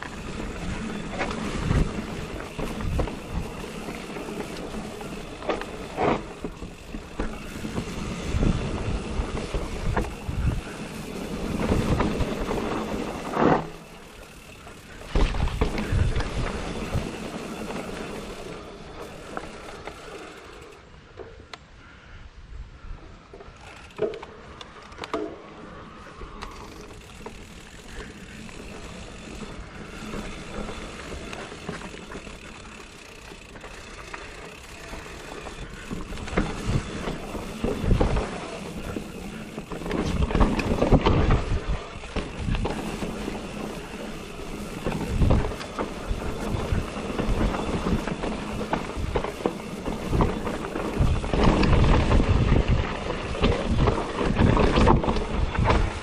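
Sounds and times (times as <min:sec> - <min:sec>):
bike rattling: 0:00.0 - 0:21.5, 0:23.2 - 0:56.0
wind on microphone: 0:07.5 - 0:13.4.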